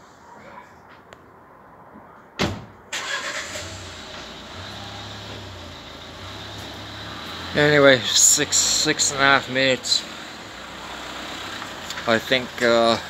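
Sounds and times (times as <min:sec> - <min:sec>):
sharp thump: 0:02.4 - 0:02.8.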